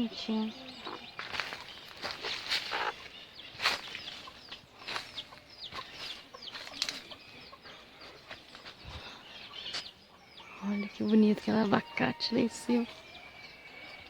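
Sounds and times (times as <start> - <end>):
hen clucking: 0.0 - 8.8
chicks peeping: 0.0 - 14.0.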